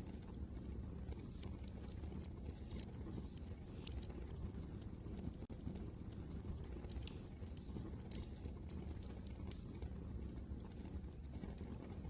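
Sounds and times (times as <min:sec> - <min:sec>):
low rumble of wind: 0:00.0 - 0:12.0
wood fire crackling: 0:00.0 - 0:12.0.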